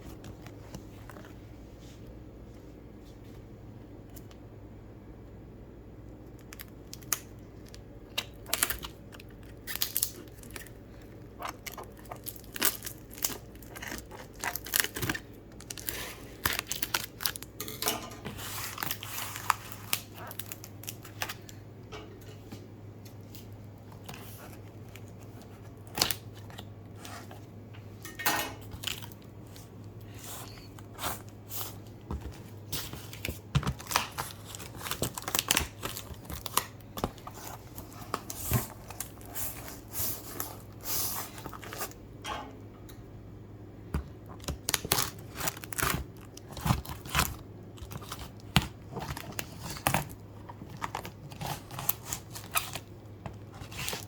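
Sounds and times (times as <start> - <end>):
low steady hum: 0.0 - 54.0
packaging tearing and crinkling: 6.3 - 17.8, 18.4 - 21.6, 32.7 - 42.0, 44.3 - 54.0.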